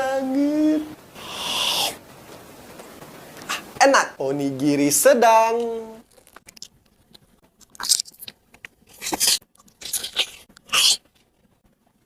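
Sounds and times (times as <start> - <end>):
crunchy chewing of rice ball: 6.0 - 11.2.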